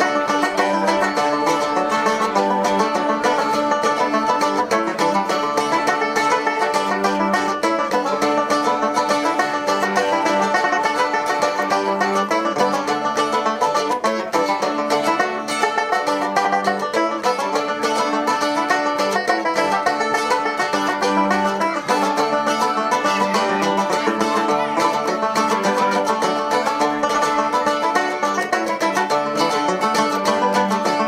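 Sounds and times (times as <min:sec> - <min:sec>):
live band fast string picking: 0:00.0 - 0:31.0.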